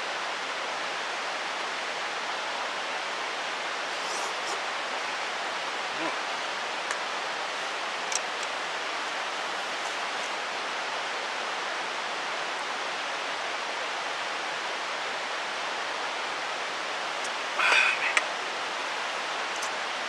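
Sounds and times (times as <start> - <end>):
stream water rushing: 0.0 - 20.0.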